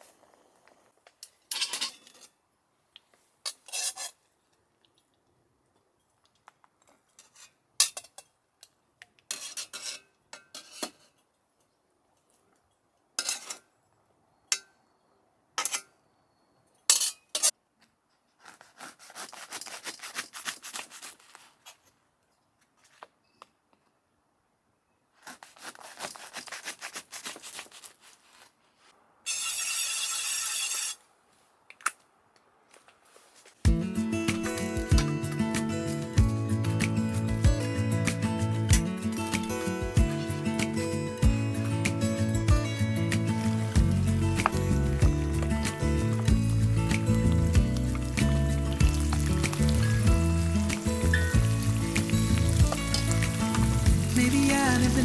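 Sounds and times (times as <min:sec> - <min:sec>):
metal utensils clinking on pots: 0:01.2 - 0:02.3, 0:34.3 - 0:40.8, 0:41.6 - 0:55.0
scraping and rubbing: 0:18.4 - 0:22.0, 0:25.2 - 0:29.0, 0:34.4 - 0:55.0
steady hiss: 0:33.8 - 0:55.0.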